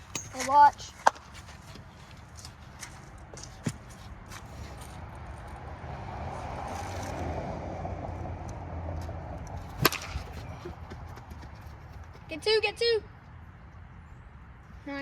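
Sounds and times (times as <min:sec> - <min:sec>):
vehicle passing: 0:04.0 - 0:14.7.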